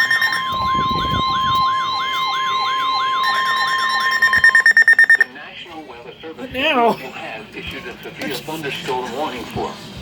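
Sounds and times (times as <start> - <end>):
siren-like wail: 0.0 - 5.2
fast pulsing beeps: 0.0 - 5.3
steady high tone: 0.0 - 5.4.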